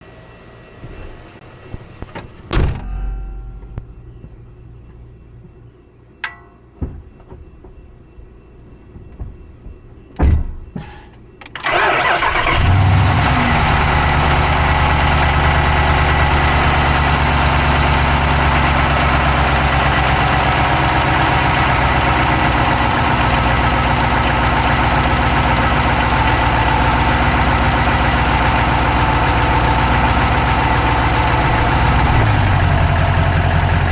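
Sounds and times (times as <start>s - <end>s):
sharp knocks: 6.2s - 7.9s
car engine starting and idling: 10.9s - 33.9s.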